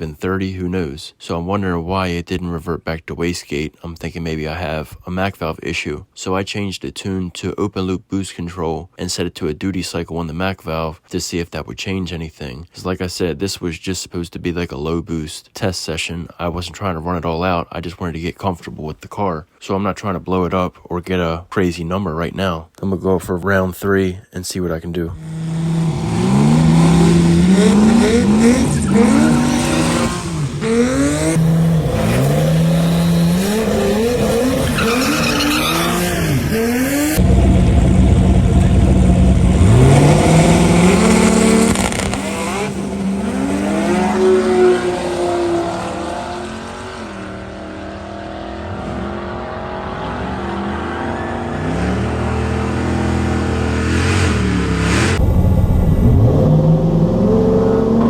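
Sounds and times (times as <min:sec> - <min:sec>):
car engine revving: 0:25.2 - 0:58.0.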